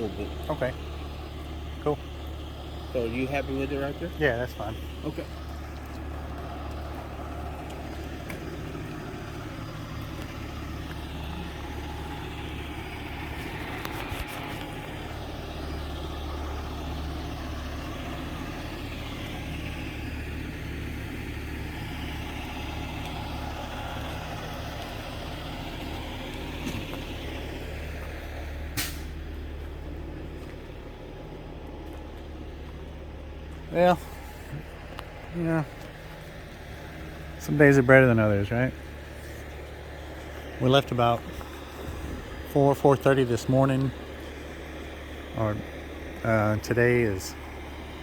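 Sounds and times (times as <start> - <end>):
truck engine idling: 0.0 - 48.0
sharp click: 28.8 - 29.1.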